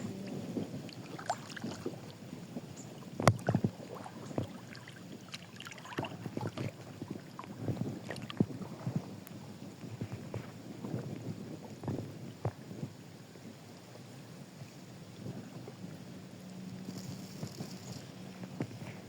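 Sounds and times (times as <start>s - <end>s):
rustling: 16.8s - 19.0s.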